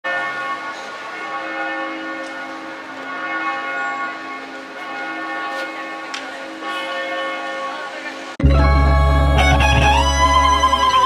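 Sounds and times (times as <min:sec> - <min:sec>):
church bells ringing: 0:00.0 - 0:11.0.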